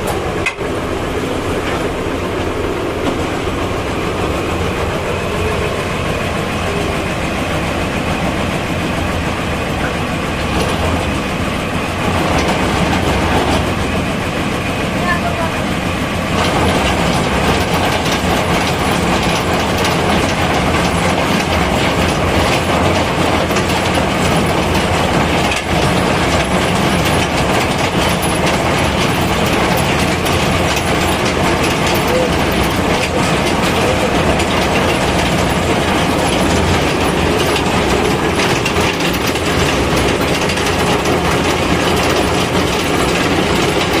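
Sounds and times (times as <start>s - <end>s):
water pump motor rattling: 0.0s - 44.0s.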